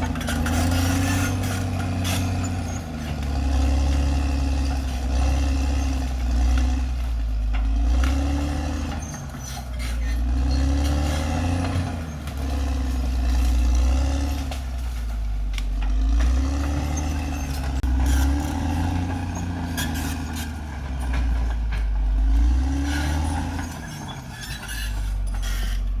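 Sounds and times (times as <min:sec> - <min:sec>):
bulldozer diesel engine under load: 0:00.0 - 0:26.0
metallic clanks from tracks: 0:14.2 - 0:26.0.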